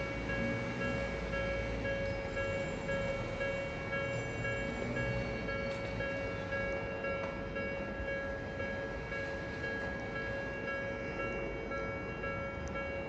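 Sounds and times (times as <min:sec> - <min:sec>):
level-crossing warning bells ringing: 0:00.0 - 0:13.0
low train rumble: 0:00.0 - 0:13.0.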